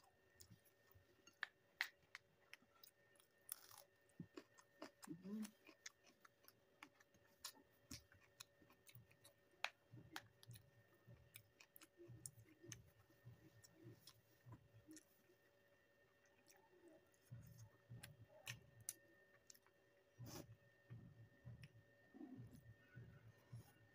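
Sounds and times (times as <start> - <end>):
person chewing: 0.3 - 15.3.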